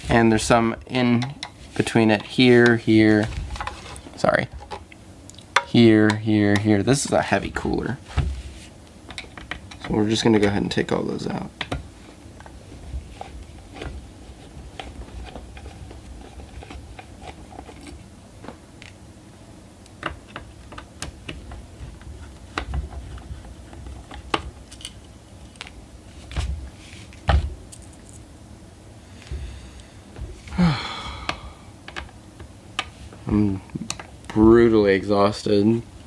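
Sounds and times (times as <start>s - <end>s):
short falling vocal sound: 30.5s - 31.3s.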